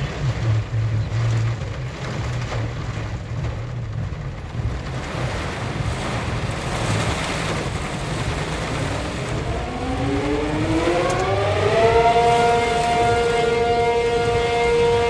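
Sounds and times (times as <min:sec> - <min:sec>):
rain and wind: 0:00.0 - 0:15.0
warning siren wailing: 0:08.0 - 0:15.0.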